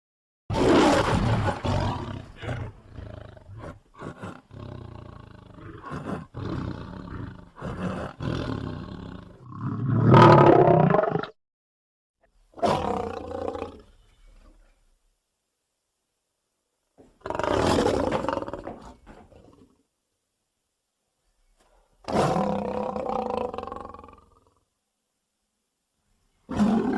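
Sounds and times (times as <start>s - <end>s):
lion growling and roaring: 0.5s - 11.3s, 17.2s - 19.7s, 26.5s - 26.9s.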